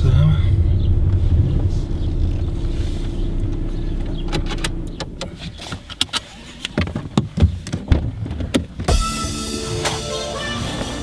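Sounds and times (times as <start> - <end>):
car engine idling: 0.0 - 9.7
car being handled clicks and knocks: 3.5 - 8.9.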